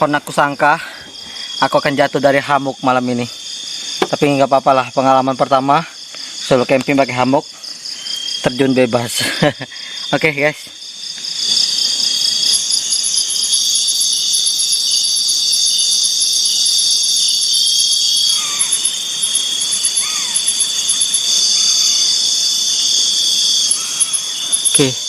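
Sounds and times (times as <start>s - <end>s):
high-pitched cricket buzzes: 0.0s - 25.0s
rapid pulsing insect trill: 0.0s - 25.0s
faint rising-and-falling calls: 11.3s - 25.0s.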